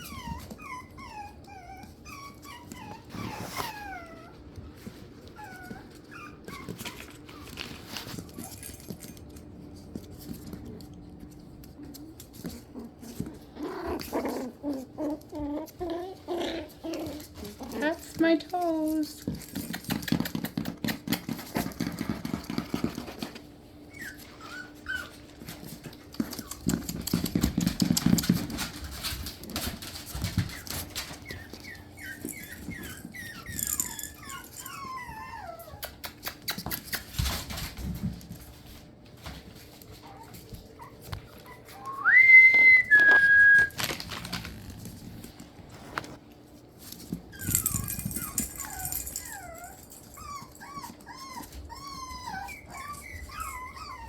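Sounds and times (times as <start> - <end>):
puppies whimpering: 0.0 - 7.6, 12.6 - 18.0, 23.8 - 26.8, 30.3 - 36.5, 40.0 - 43.8, 47.3 - 54.0
puppy whining: 0.0 - 11.0, 11.6 - 38.0, 39.6 - 45.0, 47.0 - 54.0
small clicks and scuffs: 1.8 - 14.1, 14.7 - 42.0, 43.0 - 51.7.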